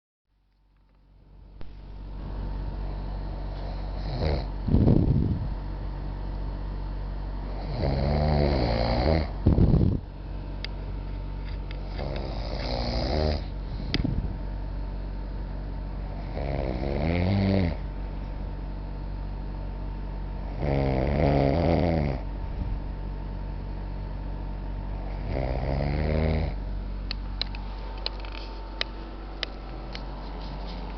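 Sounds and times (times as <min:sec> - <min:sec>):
man snoring loudly: 0:03.2 - 0:04.6, 0:07.5 - 0:09.4, 0:11.8 - 0:13.9, 0:16.1 - 0:17.8, 0:20.5 - 0:22.3, 0:25.0 - 0:26.6.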